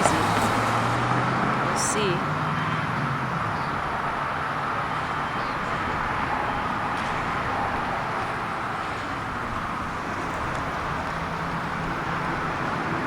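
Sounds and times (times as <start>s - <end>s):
road traffic hum: 0.0s - 13.0s.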